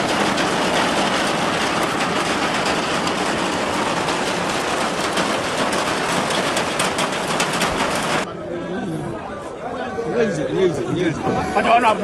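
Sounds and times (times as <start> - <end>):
heavy rain: 0.0 - 8.3.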